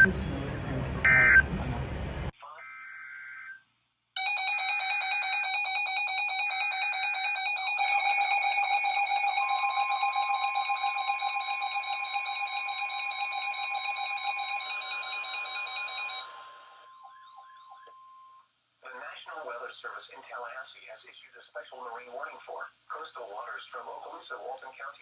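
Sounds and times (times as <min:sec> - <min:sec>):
steady warning tone: 0:00.0 - 0:01.6, 0:04.2 - 0:16.3
pulsing buzzy alarm beep: 0:07.0 - 0:16.4
warbling data tones: 0:07.8 - 0:16.3.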